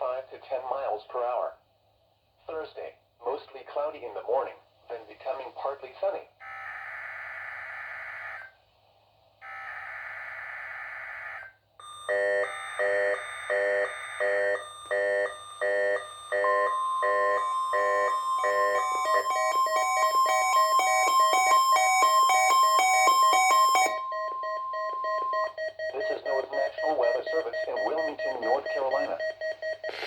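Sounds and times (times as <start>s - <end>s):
steady warning tone: 9.4s - 30.0s
weather radio alarm beeping: 9.4s - 30.0s.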